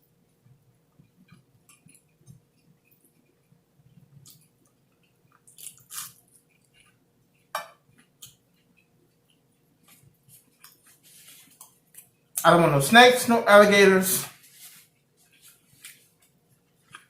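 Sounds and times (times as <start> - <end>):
person chewing: 0.9 - 12.4.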